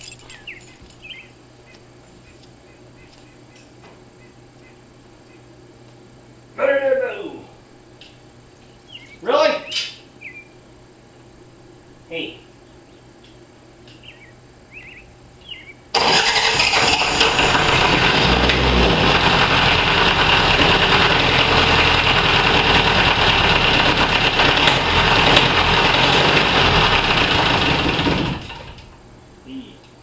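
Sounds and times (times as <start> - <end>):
faint bird chirps: 0.0 - 5.5, 8.6 - 10.6, 13.9 - 15.9
diesel engine running: 14.0 - 29.4.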